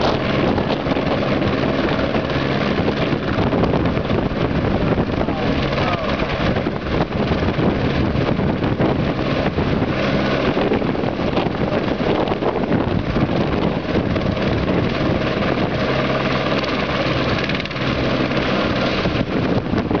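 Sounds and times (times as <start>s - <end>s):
helicopter turbine and rotor noise: 0.0s - 20.0s.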